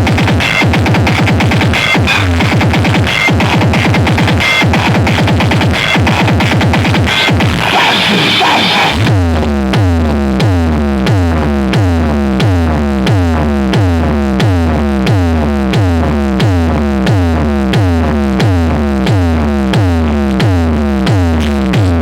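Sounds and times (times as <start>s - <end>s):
falling synthesized bass sweep: 0.0s - 22.0s
steady deep bass tone: 0.0s - 22.0s.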